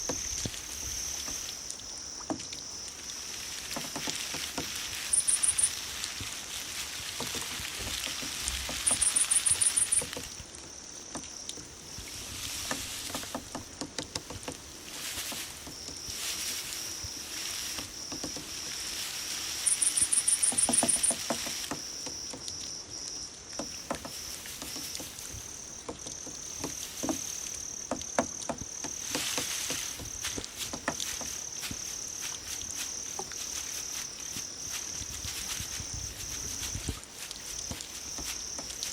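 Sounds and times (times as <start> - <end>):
insect high-pitched trill: 0.0 - 38.9
pulsed insect chirps: 5.0 - 6.0, 8.8 - 11.1, 15.7 - 24.8.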